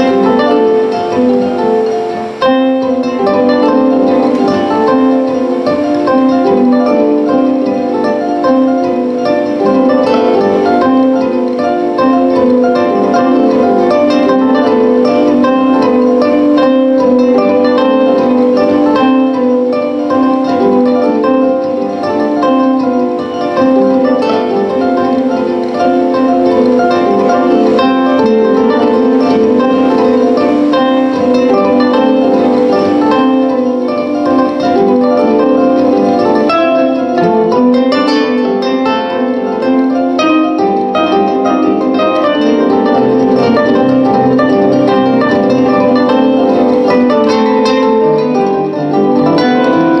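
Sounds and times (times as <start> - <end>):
plucked string instrument notes: 0.0 - 50.0.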